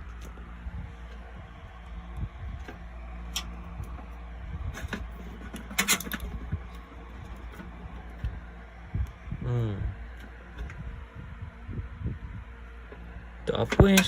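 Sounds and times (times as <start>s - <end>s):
low steady hum: 0.0s - 14.0s
computer parts clicking and knocking: 4.8s - 8.4s.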